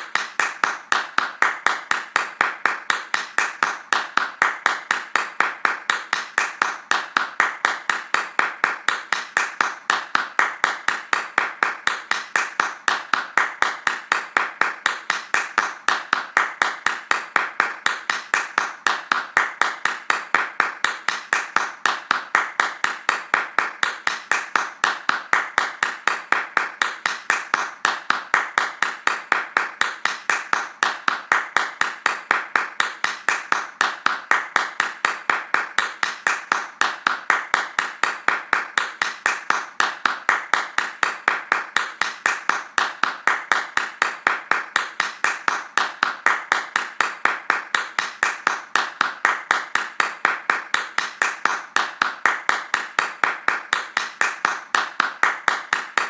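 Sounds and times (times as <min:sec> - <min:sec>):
hands clapping fast: 0:00.0 - 0:56.0.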